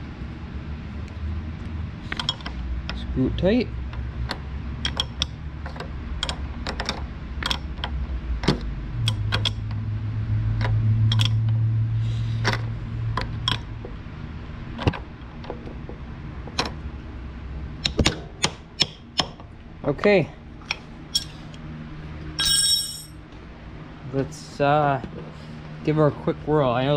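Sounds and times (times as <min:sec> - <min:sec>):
steady low hum: 0:00.0 - 0:26.9
hand tools clicking on metal: 0:20.7 - 0:21.4.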